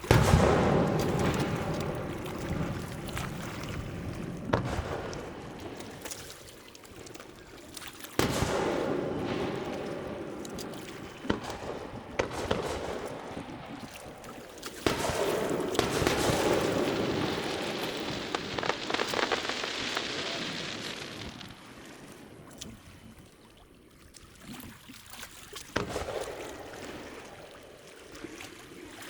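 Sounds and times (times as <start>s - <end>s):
fireworks booming: 0.0s - 22.8s, 25.8s - 27.4s
rolling rumble: 9.2s - 22.8s.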